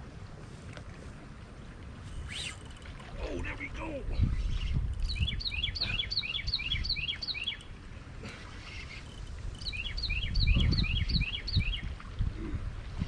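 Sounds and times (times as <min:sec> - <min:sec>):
songbird chirping: 0:03.5 - 0:07.8, 0:08.6 - 0:11.9.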